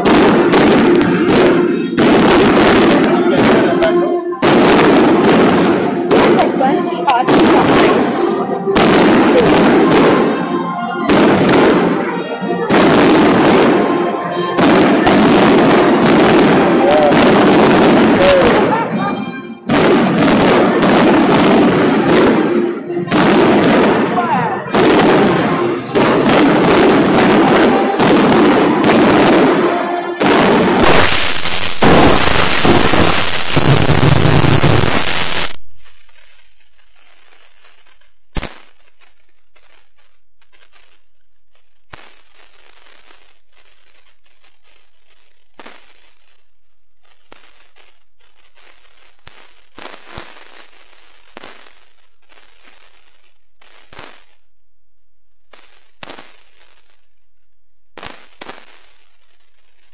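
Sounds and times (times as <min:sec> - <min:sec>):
fireworks bursts and bangs: 0:00.0 - 0:12.1, 0:12.7 - 0:19.0, 0:19.6 - 0:59.9
steady high-pitched whine: 0:29.6 - 0:59.9
faint crackles and pops: 0:30.6 - 0:59.9.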